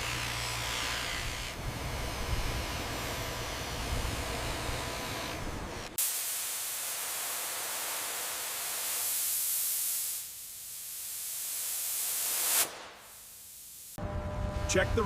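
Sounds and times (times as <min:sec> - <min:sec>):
paint spray gun hissing: 0:02.3 - 0:14.0.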